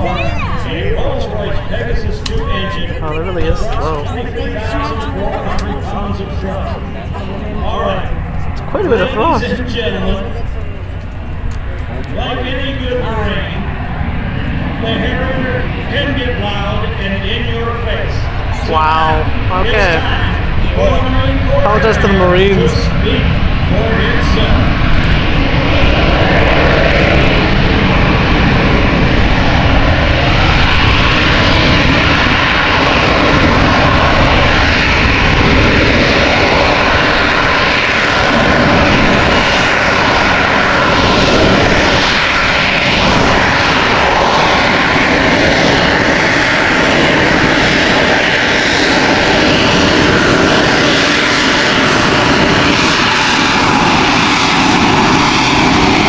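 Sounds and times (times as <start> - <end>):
loud jet engine roar: 0.0 - 56.0.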